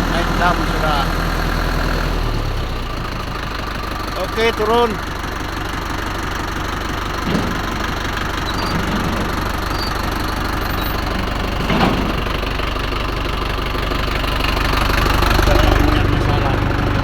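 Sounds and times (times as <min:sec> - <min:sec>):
truck engine idling: 0:00.0 - 0:17.0
metal knocks: 0:07.0 - 0:12.6.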